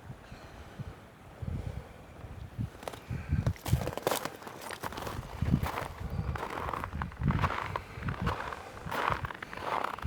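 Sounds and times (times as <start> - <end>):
footsteps on icy ground: 2.8 - 10.0.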